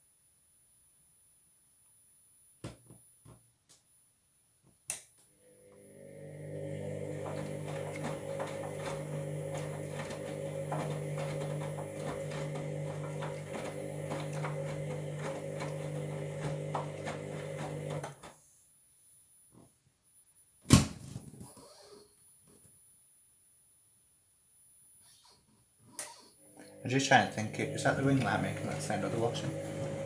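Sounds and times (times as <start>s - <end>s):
click: 4.9s - 5.3s
washing machine drum turning: 7.0s - 18.0s, 27.2s - 30.0s.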